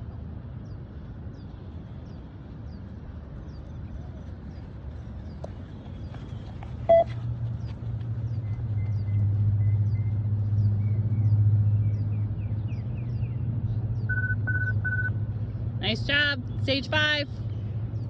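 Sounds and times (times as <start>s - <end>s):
vehicle engine rumble: 0.0s - 18.0s
bird chirps: 6.0s - 7.2s
electronic beeps: 6.9s - 7.1s, 14.1s - 15.1s.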